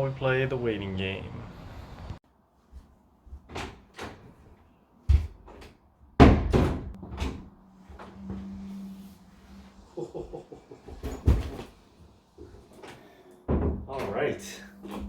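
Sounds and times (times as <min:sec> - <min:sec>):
knocks and thuds: 0:06.2 - 0:07.4, 0:13.5 - 0:14.0.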